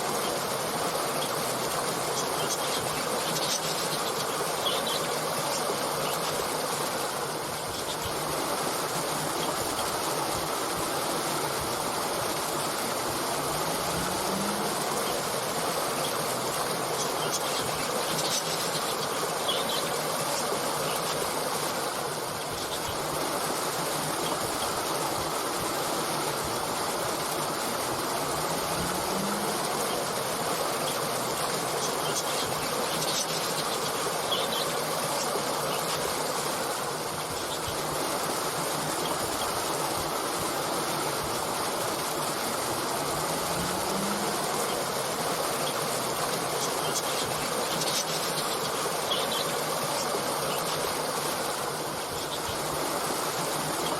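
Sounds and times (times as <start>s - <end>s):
stream flowing: 0.0s - 53.9s
faint bird chirps: 43.6s - 50.9s.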